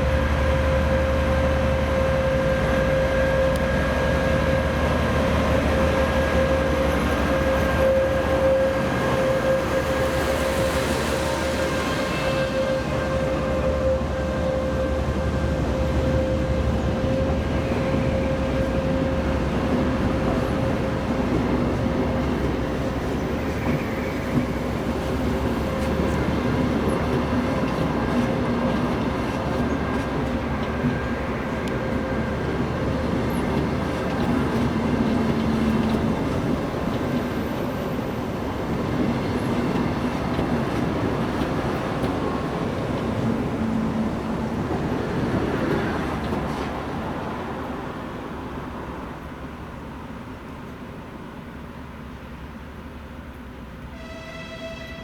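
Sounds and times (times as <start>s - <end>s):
train rumbling: 0.0s - 55.0s.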